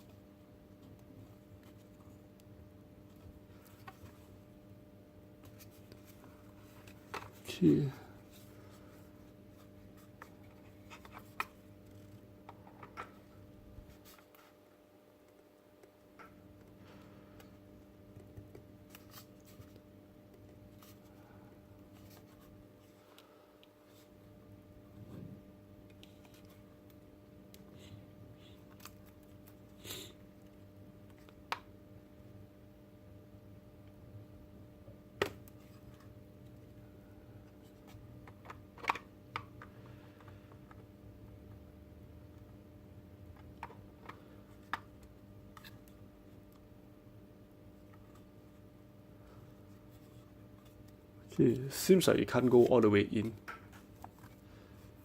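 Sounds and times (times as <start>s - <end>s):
low steady hum: 0.0s - 55.0s.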